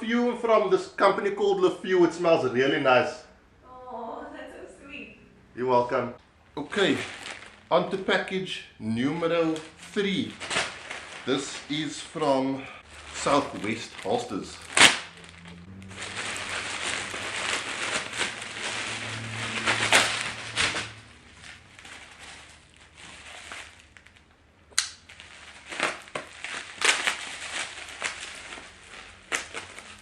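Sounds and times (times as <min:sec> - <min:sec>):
packaging crinkling and tearing: 0:06.6 - 0:07.8, 0:09.3 - 0:30.0.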